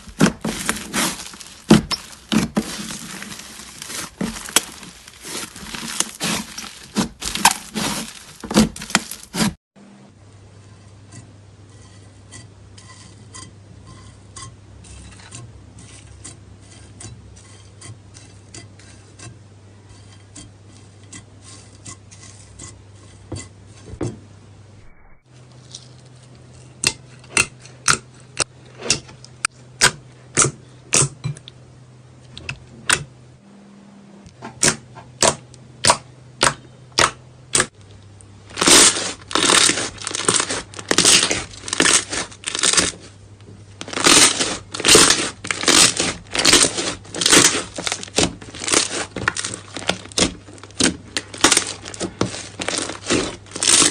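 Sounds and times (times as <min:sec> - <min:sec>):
crunchy crackle: 0:00.0 - 0:09.6, 0:37.6 - 0:53.9
slime squeezed by hands: 0:00.0 - 0:09.6, 0:38.5 - 0:43.0, 0:43.9 - 0:53.9.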